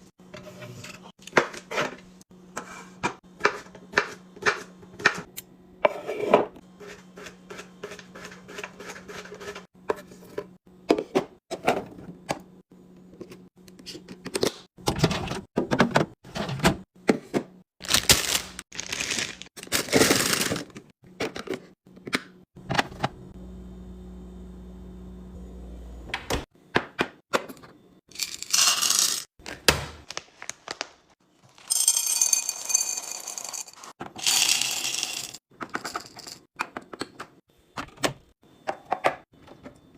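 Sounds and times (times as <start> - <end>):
steady low hum: 22.6 - 26.5.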